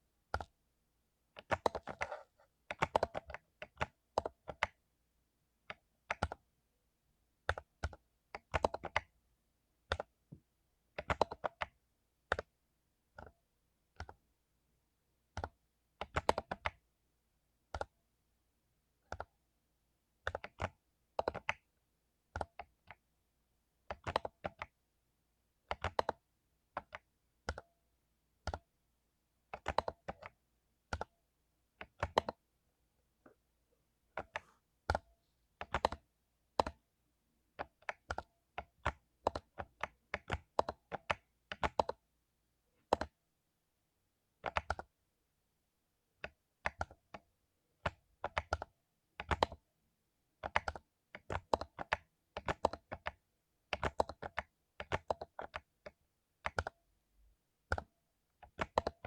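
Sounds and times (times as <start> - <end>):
mechanical keyboard typing: 1.4 - 4.8, 5.7 - 6.4, 7.4 - 9.1, 9.9 - 10.1, 11.0 - 12.5, 13.9 - 14.2, 15.3 - 16.8, 19.1 - 19.3, 20.2 - 21.7, 23.9 - 24.8, 25.7 - 27.6, 29.5 - 31.1, 31.8 - 32.4, 35.6 - 36.8, 37.6 - 42.0, 42.8 - 43.2, 44.4 - 44.9, 46.2 - 47.2, 47.8 - 49.6, 50.4 - 56.8, 57.6 - 59.0.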